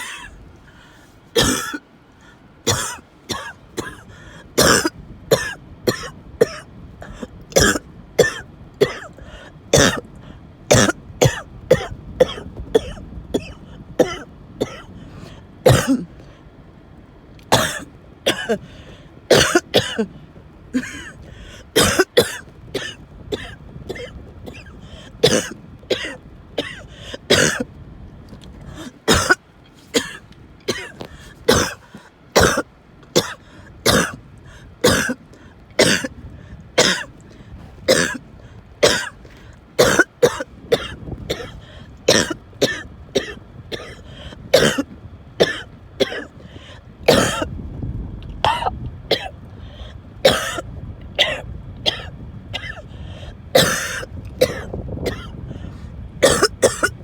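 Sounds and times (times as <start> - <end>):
person hacking cough: 0.0 - 0.4, 1.4 - 1.8, 2.7 - 10.1, 10.7 - 14.9, 15.6 - 16.2, 17.5 - 18.7, 19.3 - 20.1, 20.8 - 27.7, 28.7 - 34.2, 34.8 - 35.2, 35.8 - 36.2, 36.8 - 37.1, 37.9 - 38.2, 38.8 - 39.2, 39.8 - 46.3, 47.1 - 47.5, 48.4 - 49.3, 50.2 - 50.6, 51.2 - 52.8, 53.6 - 55.4, 56.2 - 57.0.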